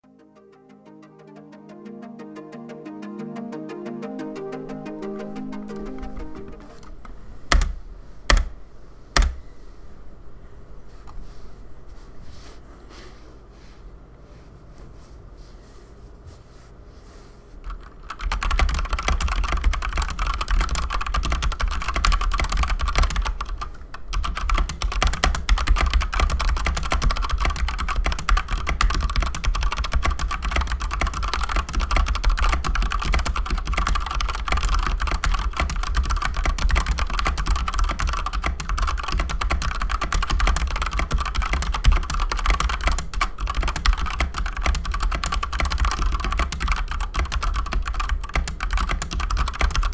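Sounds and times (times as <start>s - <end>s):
typing on mechanical keyboard: 17.7s - 49.9s.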